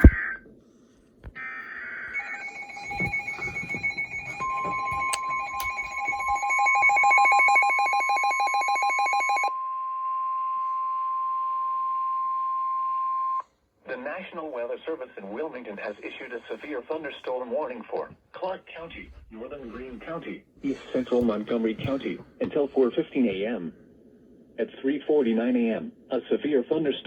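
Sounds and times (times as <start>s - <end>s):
rapid electronic beeping alarm: 2.0s - 9.5s
steady warning tone: 2.1s - 9.5s.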